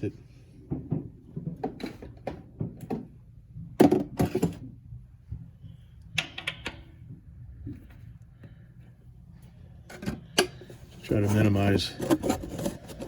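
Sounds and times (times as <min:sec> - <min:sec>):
faint steady hum: 0:00.0 - 0:13.0
clicks and knocks of hands working: 0:06.2 - 0:06.9.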